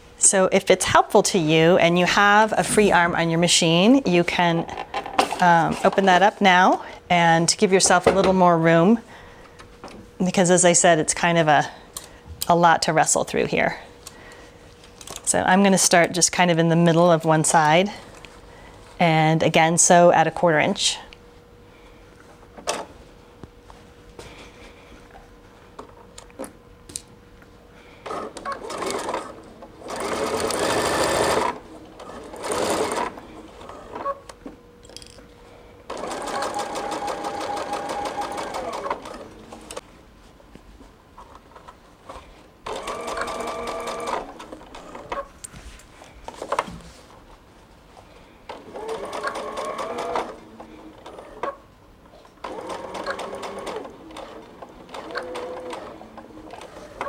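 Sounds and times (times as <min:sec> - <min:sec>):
sewing machine stitching: 0:28.1 - 0:33.2, 0:35.9 - 0:39.4, 0:42.7 - 0:45.2, 0:48.5 - 0:51.6, 0:52.4 - 0:57.0.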